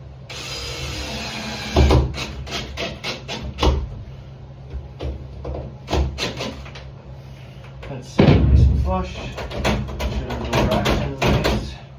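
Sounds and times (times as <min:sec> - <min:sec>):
heavy thumps: 0:08.2 - 0:11.6.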